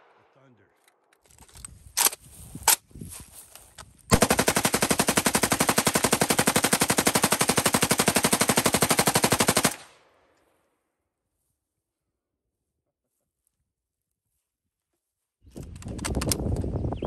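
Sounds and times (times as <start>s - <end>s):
automatic gunfire burst: 4.1s - 9.8s.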